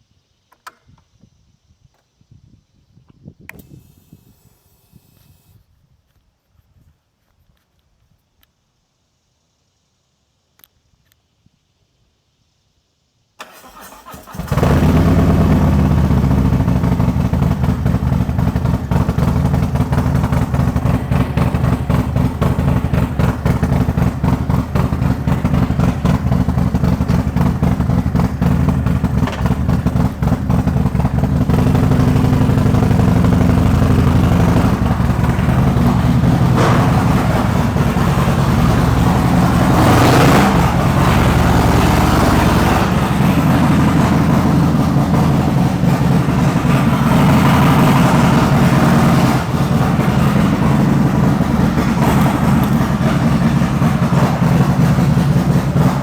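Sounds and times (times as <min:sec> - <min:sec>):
motorcycle engine idling: 0:13.6 - 0:56.0.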